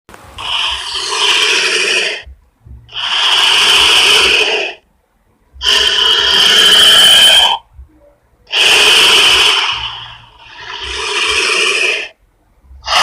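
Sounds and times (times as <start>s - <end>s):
harsh raspy hisses: 0.4s - 2.2s, 2.9s - 4.8s, 5.6s - 7.6s, 8.5s - 12.2s
faint low rumble: 2.2s - 3.2s, 4.8s - 6.0s, 7.5s - 8.5s, 9.4s - 13.0s.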